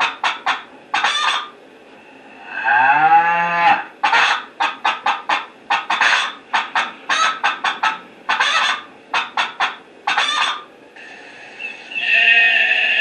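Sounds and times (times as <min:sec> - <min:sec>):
chickens clucking through speaker: 0:00.0 - 0:02.6, 0:03.7 - 0:13.0.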